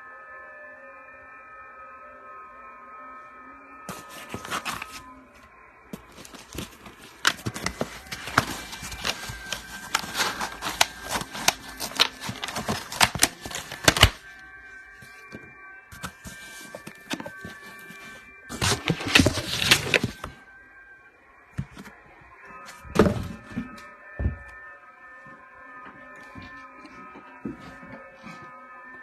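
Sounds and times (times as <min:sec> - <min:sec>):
plastic wrap crinkling: 0:03.9 - 0:05.1, 0:06.0 - 0:14.3, 0:15.2 - 0:20.3
rapid clicks and rustles: 0:06.0 - 0:14.3.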